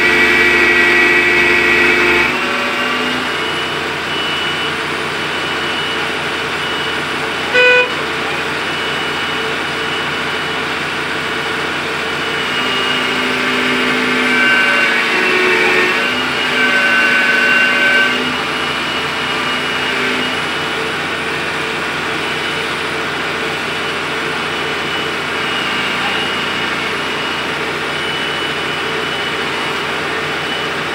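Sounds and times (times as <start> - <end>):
short horn toot: 0.0 - 3.2, 7.5 - 8.4, 12.5 - 18.4
excavator engine running: 0.0 - 30.9.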